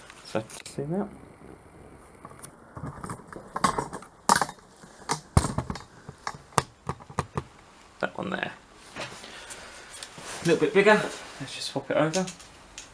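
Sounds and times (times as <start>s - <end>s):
hand tools and metal parts clinking: 12.0s - 12.9s.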